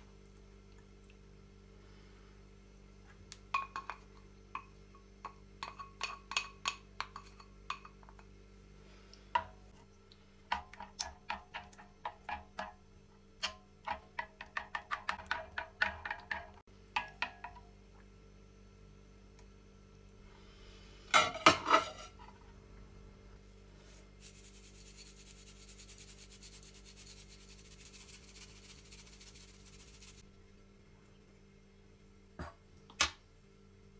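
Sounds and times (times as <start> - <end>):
utensil clinking against bowl: 3.6 - 8.3.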